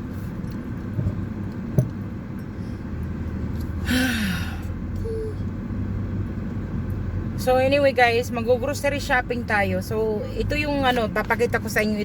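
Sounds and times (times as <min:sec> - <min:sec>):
person sighing: 0:03.8 - 0:05.4.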